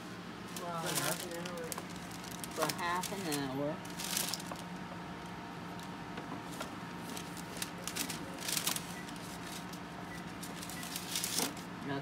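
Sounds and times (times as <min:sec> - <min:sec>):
air fryer humming: 0:00.0 - 0:12.0
tray rustling: 0:00.5 - 0:04.7, 0:06.4 - 0:11.6.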